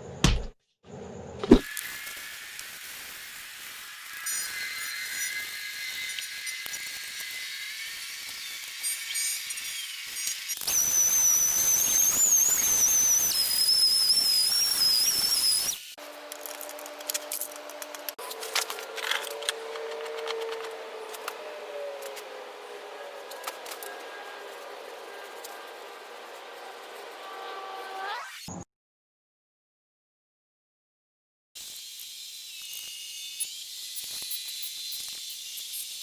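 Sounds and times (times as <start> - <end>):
high wavering whistle: 10.7 - 15.9.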